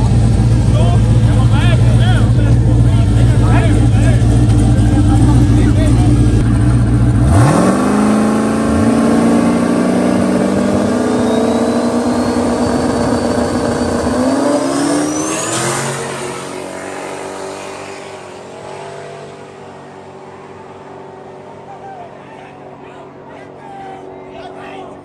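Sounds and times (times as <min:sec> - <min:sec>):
cars accelerating at full throttle: 0:00.0 - 0:25.0
turbo whistle rising in pitch: 0:10.6 - 0:16.2.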